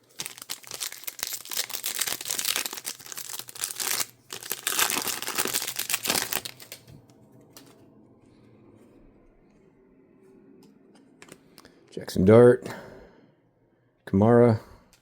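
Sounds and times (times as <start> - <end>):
plastic wrapper crinkling and tearing: 0.0 - 7.0.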